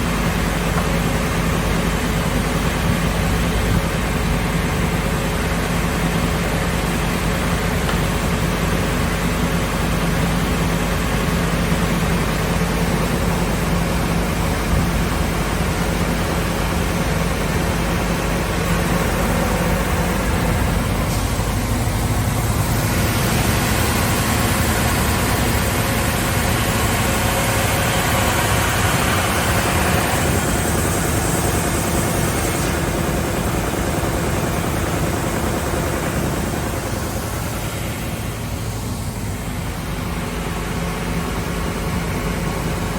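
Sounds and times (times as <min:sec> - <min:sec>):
wide-belt sander running: 0:15.2 - 0:42.2.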